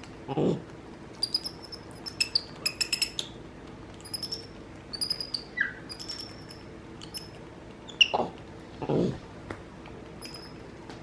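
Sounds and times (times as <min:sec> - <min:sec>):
monkey squeaking and chirping: 0:01.2 - 0:03.4, 0:04.0 - 0:08.2, 0:10.2 - 0:10.6.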